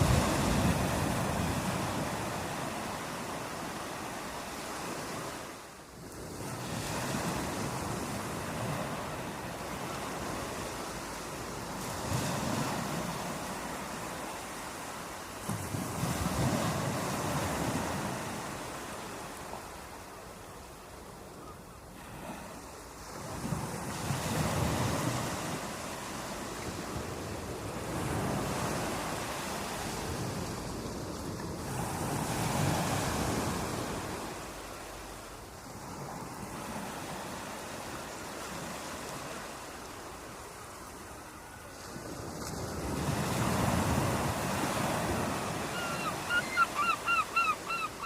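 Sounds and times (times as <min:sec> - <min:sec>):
sea waves breaking on shore: 0:00.0 - 0:48.0.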